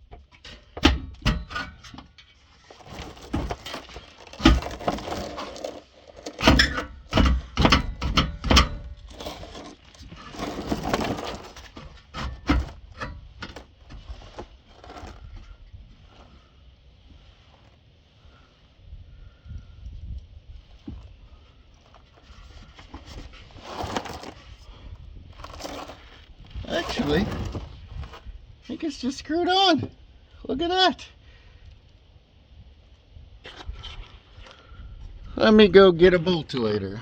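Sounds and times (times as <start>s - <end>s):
metal scraping: 2.6s - 15.3s, 22.2s - 24.6s, 25.3s - 28.3s
metal knocks and clanks: 2.8s - 13.7s.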